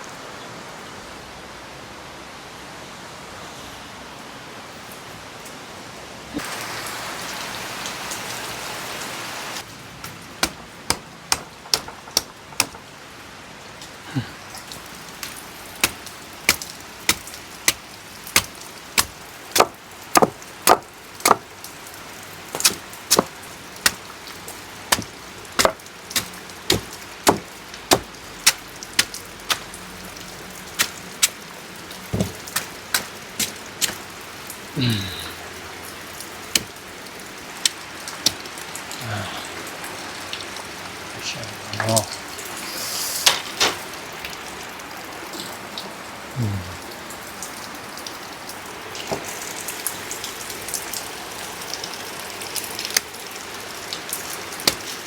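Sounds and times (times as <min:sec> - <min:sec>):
rain hiss: 0:00.0 - 0:55.0
sharp chopping strikes: 0:10.4 - 0:12.8, 0:18.4 - 0:21.4, 0:22.6 - 0:23.3, 0:24.9 - 0:29.7, 0:32.2 - 0:34.0, 0:54.7 - 0:54.9.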